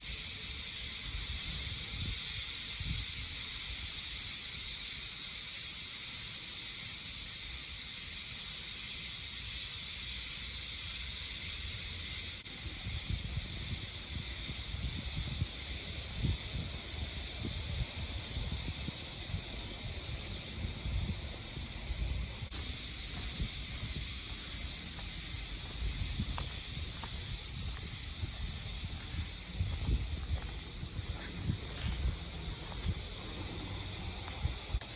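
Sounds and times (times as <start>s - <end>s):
cicadas shrilling: 0.0s - 34.9s
wind buffeting microphone: 1.0s - 3.8s, 12.4s - 34.9s.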